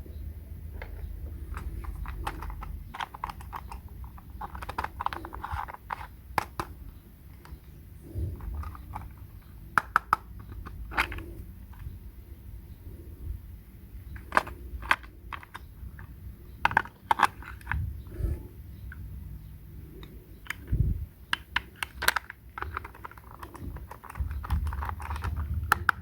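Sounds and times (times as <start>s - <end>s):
low steady hum: 0.0s - 26.0s
small objects clicking and tapping: 0.8s - 6.8s, 14.1s - 17.9s, 19.9s - 26.0s.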